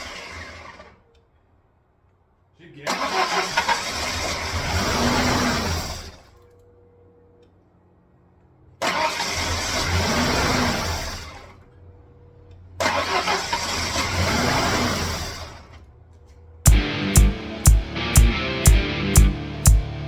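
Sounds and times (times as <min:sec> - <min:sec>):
car engine cranking on starter: 0:00.0 - 0:01.0, 0:02.8 - 0:06.4, 0:08.8 - 0:11.6, 0:12.8 - 0:15.9.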